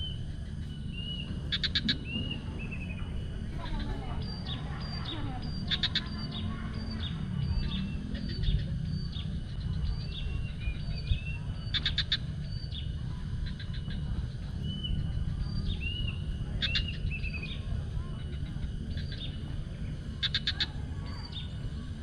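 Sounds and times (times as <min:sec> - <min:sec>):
birds chirping and whistling: 0:00.0 - 0:22.0
steady low rumble: 0:00.0 - 0:22.0
bird rattling call: 0:01.5 - 0:02.4, 0:11.7 - 0:12.2.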